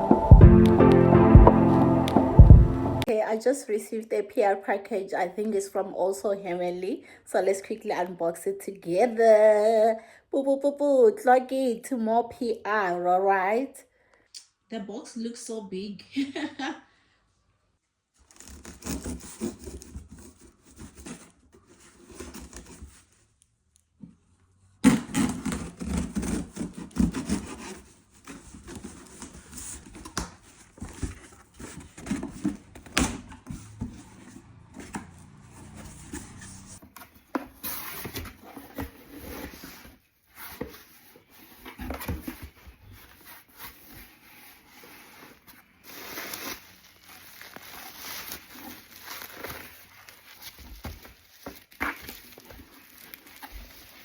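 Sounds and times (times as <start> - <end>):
box packing rustling and scraping: 18.3 - 23.2, 24.9 - 54.0.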